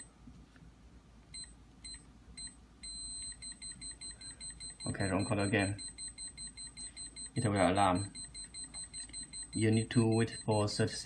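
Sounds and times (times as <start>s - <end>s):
rapidly repeating alarm beep: 1.4s - 11.0s.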